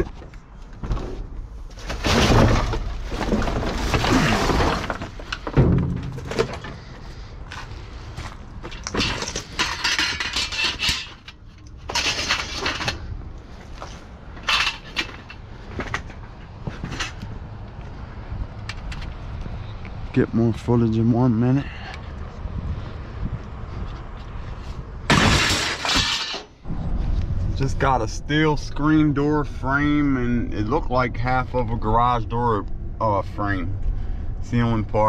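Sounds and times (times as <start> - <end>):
scrap metal and plastic clattering: 0.0 - 7.7, 8.6 - 17.3, 25.1 - 26.6.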